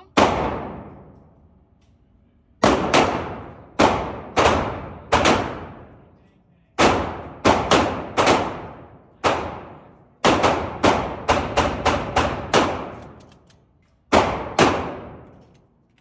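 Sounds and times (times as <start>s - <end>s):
pistol shots echoing: 0.1s - 1.4s, 2.6s - 6.1s, 6.8s - 13.3s, 14.1s - 15.5s.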